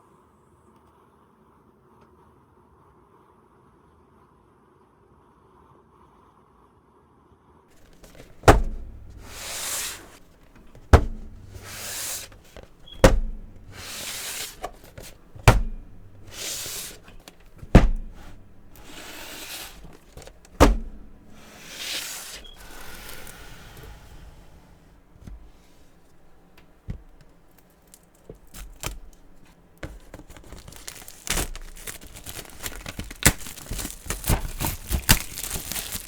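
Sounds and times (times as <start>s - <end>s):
sharp thuds: 7.8s - 27.5s, 28.2s - 36.0s.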